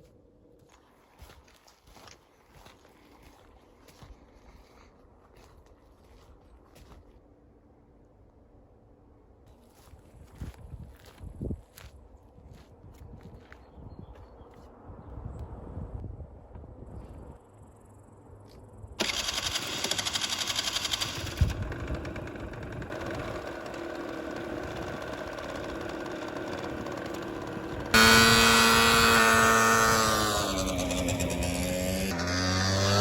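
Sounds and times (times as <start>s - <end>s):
construction machinery engines: 19.0s - 33.0s
droning engine hum: 19.0s - 33.0s.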